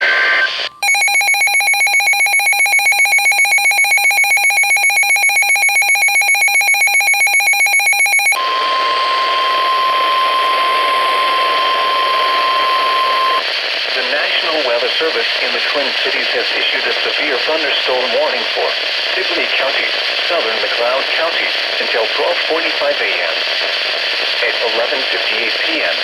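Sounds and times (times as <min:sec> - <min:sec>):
shrill pulsing alarm beep: 0:00.8 - 0:13.4
steady warning alarm tone: 0:00.8 - 0:13.4
radio hiss: 0:12.3 - 0:26.0.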